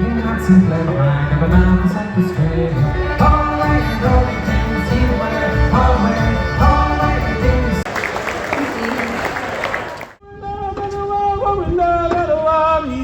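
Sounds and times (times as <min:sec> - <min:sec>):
band playing country music: 0:00.0 - 0:07.9
pulsing bass line: 0:00.0 - 0:07.9.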